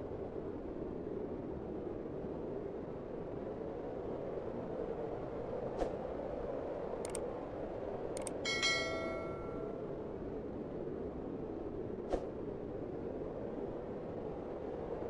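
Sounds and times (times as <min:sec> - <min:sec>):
sharp clicks: 0:07.0 - 0:07.2, 0:08.2 - 0:08.4
metallic ring: 0:08.5 - 0:09.9.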